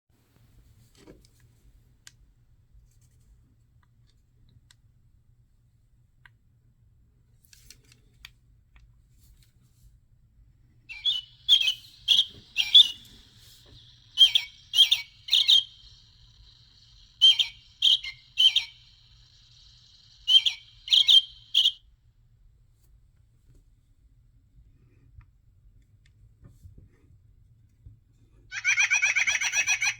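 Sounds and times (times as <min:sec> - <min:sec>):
recorded birdsong from small speaker: 0:10.9 - 0:21.9, 0:28.5 - 0:29.9.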